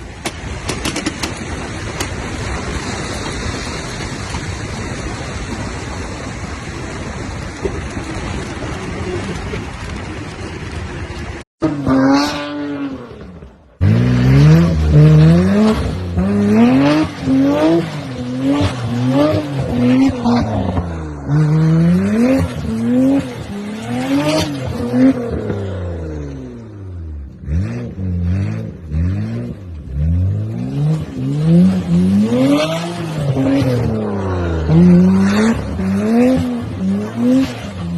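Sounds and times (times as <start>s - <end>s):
car engine revving: 11.6s - 37.9s.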